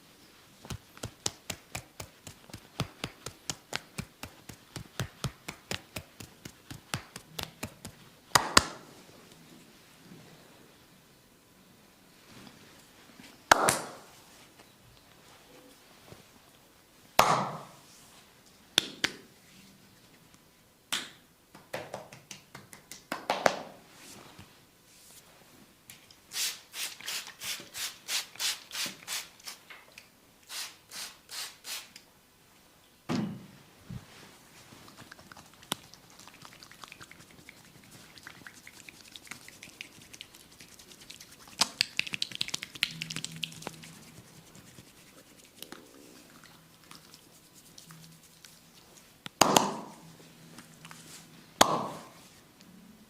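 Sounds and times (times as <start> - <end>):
hands slapping skin: 0.6 - 8.8, 13.5 - 14.0, 20.9 - 23.7, 38.4 - 45.9.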